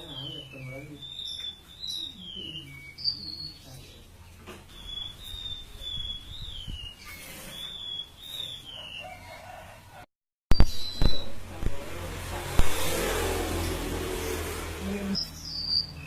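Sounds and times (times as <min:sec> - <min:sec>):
songbird whistling: 0:04.7 - 0:09.4, 0:10.5 - 0:11.4, 0:15.2 - 0:16.0.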